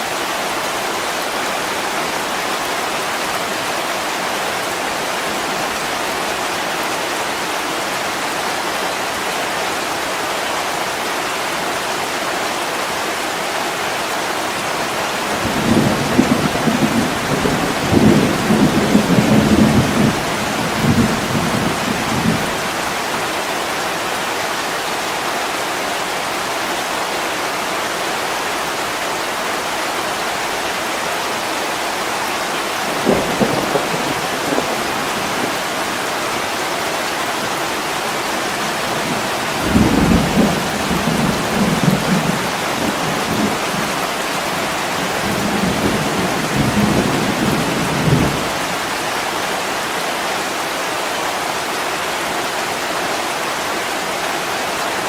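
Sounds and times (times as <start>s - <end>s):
heavy rain: 0.0s - 55.0s
thunder rumbling: 32.9s - 35.7s, 38.6s - 48.7s.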